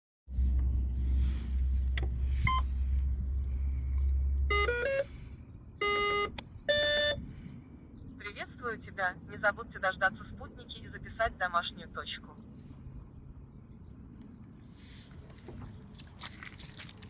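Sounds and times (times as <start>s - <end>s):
low hum: 0.3s - 8.2s.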